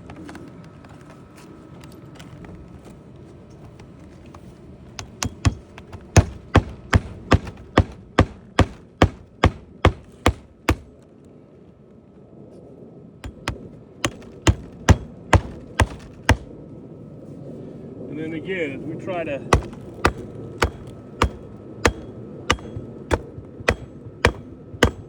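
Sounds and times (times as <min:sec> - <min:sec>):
hammer striking roof shingle: 0:05.0 - 0:10.9, 0:13.2 - 0:16.5, 0:19.5 - 0:25.0.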